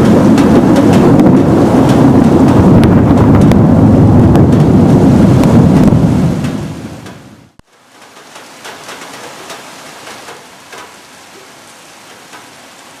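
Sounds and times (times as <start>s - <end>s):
thunder rumble: 0.0s - 7.6s
sharp raindrop sounds: 0.0s - 11.0s
steady rain: 0.0s - 13.0s.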